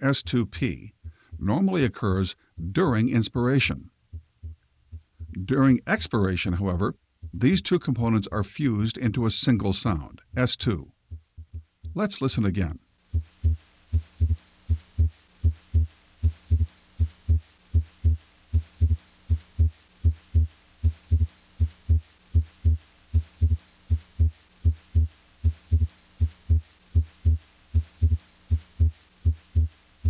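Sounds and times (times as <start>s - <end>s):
heartbeat through stethoscope: 0.3s - 1.7s, 2.6s - 2.8s, 3.6s - 5.5s, 7.2s - 7.6s, 10.2s - 12.0s, 13.1s - 29.8s
deep breathing: 1.0s - 1.4s.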